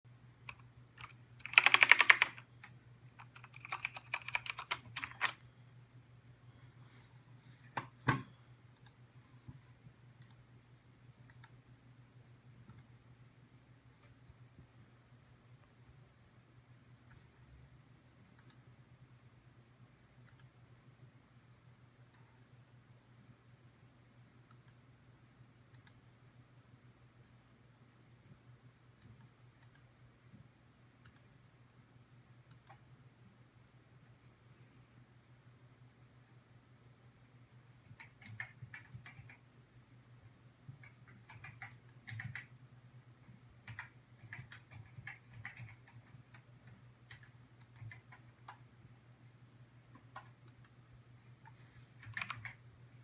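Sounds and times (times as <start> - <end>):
mechanical keyboard key clicks: 0.5 - 2.4, 3.2 - 5.4
mechanical keyboard key presses: 0.5 - 2.4, 3.2 - 5.4, 40.8 - 42.5, 43.7 - 46.4, 52.0 - 52.6.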